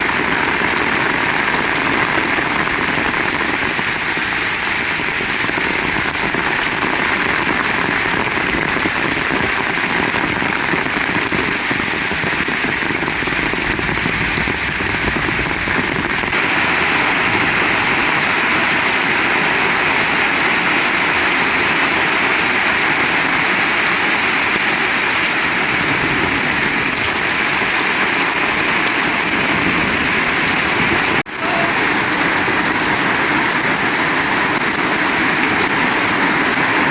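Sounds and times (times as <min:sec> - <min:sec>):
heavy rain pouring: 0:00.0 - 0:36.9.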